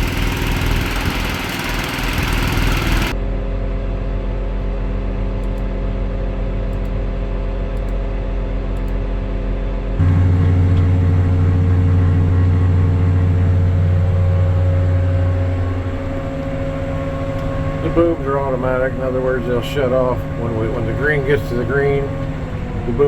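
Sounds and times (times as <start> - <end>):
farm machinery engine droning: 0.0 - 3.4, 10.0 - 23.0.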